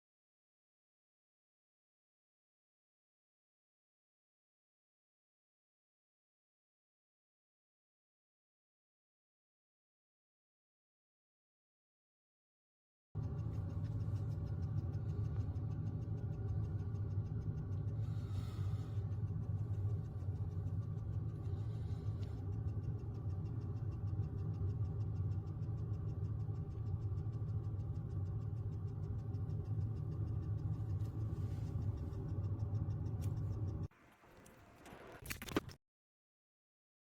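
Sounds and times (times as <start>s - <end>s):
steady low hum: 13.2s - 35.6s.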